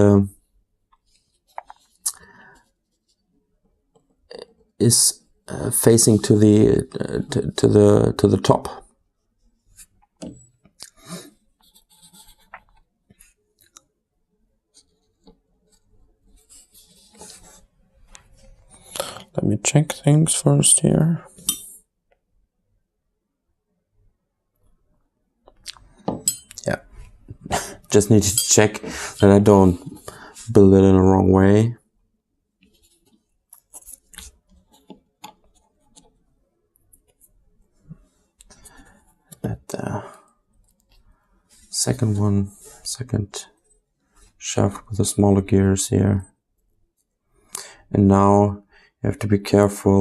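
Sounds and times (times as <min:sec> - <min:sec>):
soft rustle: 0:11.4 - 0:13.4, 0:32.6 - 0:36.2.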